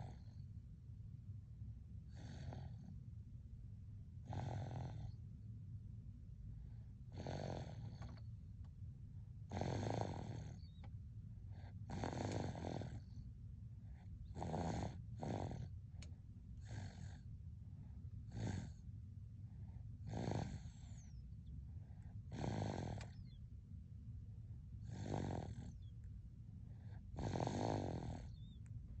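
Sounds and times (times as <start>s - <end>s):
baby snoring: 0.0s - 0.4s, 2.1s - 2.9s, 4.2s - 5.2s, 7.1s - 8.2s, 9.5s - 10.8s, 11.8s - 13.1s, 14.2s - 15.7s, 16.6s - 17.2s, 18.3s - 18.8s, 20.0s - 21.1s, 22.3s - 23.2s, 24.8s - 26.0s, 27.0s - 28.6s
steady low hum: 0.0s - 29.0s.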